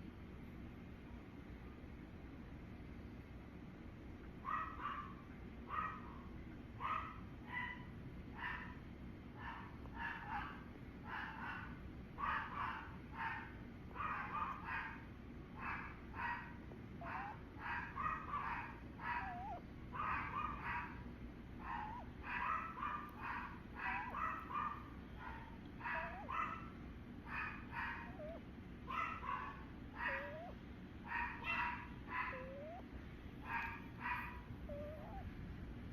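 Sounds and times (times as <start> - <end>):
animal snoring: 30.0 - 30.6, 32.3 - 32.8.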